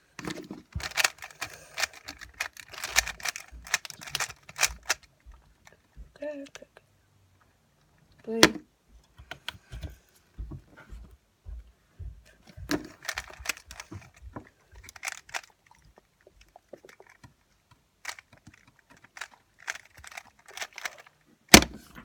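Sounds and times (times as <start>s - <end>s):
puzzle cube plastic clicking: 0.2s - 5.1s, 12.6s - 14.2s, 14.8s - 21.8s.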